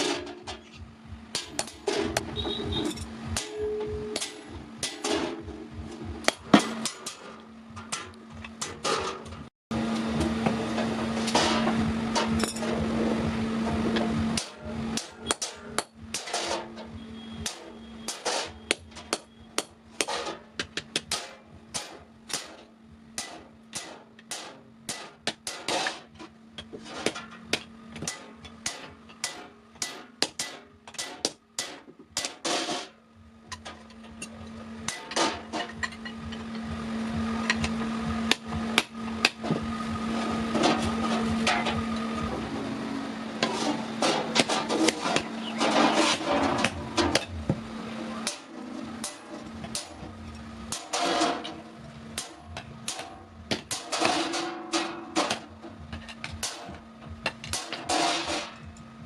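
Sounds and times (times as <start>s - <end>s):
machine hum and hiss: 0.0s - 59.0s
hammer striking steel on anvil: 1.3s - 5.5s, 14.4s - 16.8s, 17.4s - 36.7s, 48.2s - 50.1s, 50.7s - 58.8s.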